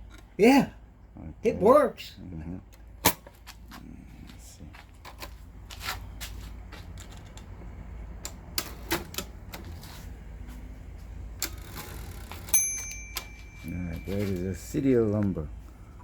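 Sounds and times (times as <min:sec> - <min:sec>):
typewriter bell ding: 0:12.5 - 0:14.7.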